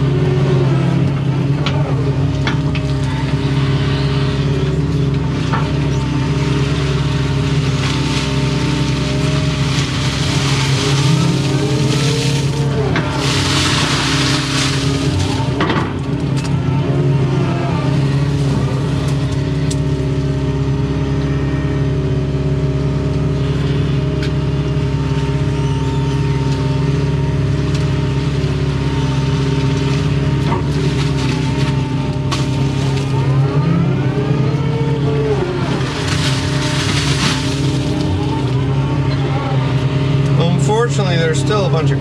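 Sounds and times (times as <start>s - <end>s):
excavator diesel engine running: 0.0s - 42.0s
hydraulic whine: 0.0s - 42.0s.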